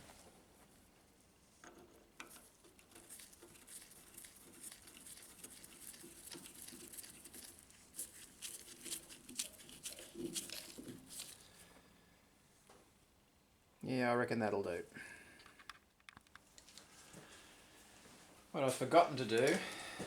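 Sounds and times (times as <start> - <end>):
small clicks taps and rubs: 1.5 - 11.5, 15.4 - 17.3.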